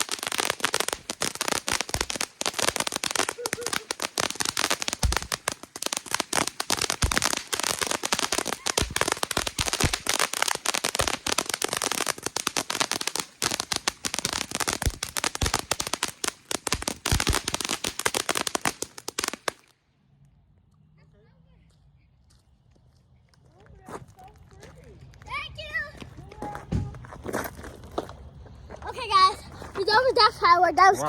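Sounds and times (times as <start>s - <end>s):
firecrackers popping: 0.0s - 19.8s.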